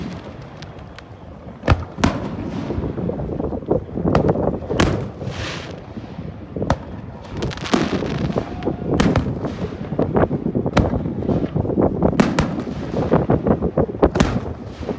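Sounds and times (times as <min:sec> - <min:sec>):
hissing crackle: 0:00.0 - 0:14.9
firework shells bursting: 0:06.6 - 0:14.9.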